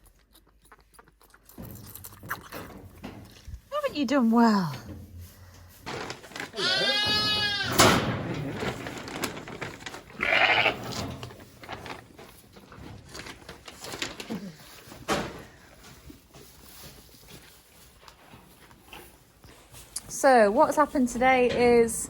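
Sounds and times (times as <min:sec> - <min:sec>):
knocks and rustles: 0:01.5 - 0:20.0
sheep bleating: 0:06.6 - 0:07.8, 0:10.2 - 0:10.8.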